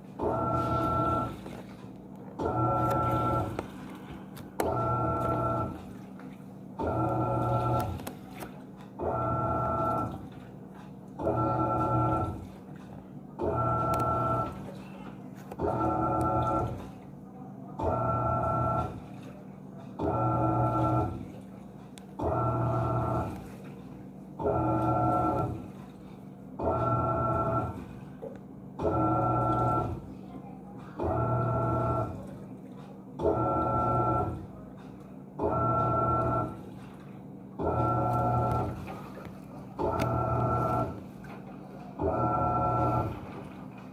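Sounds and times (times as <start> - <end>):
water swishing: 0.0 - 17.2, 36.0 - 43.9
washing machine motor whining: 0.0 - 30.2, 30.8 - 43.9.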